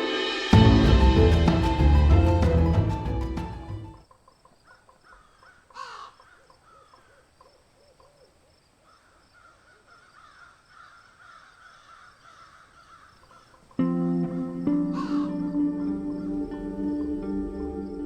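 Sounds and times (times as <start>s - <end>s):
music: 0.0s - 4.0s, 13.8s - 18.0s.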